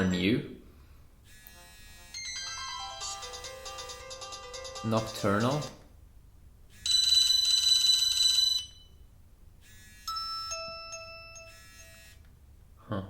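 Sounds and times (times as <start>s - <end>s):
electronic tones: 1.4s - 5.8s
phone ringtone chime: 2.1s - 5.8s, 6.9s - 9.0s, 10.0s - 12.2s.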